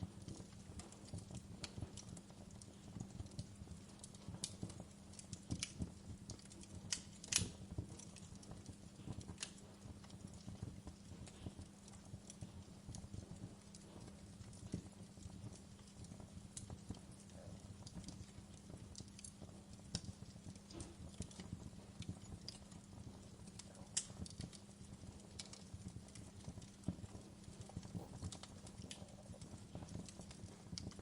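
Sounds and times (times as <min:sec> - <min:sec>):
wood fire crackling: 0:00.0 - 0:31.0
low steady hum: 0:20.0 - 0:31.0.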